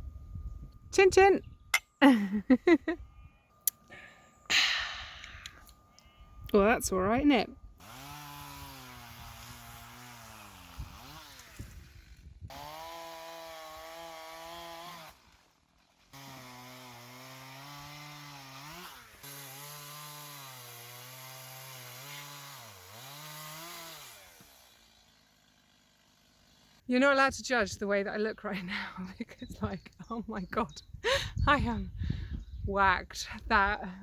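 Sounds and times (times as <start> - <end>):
chainsaw cutting wood: 7.8 - 26.9.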